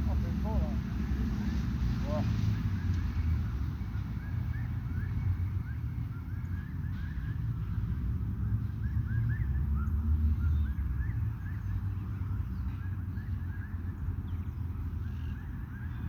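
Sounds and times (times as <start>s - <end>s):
birds chirping: 0.0s - 3.3s.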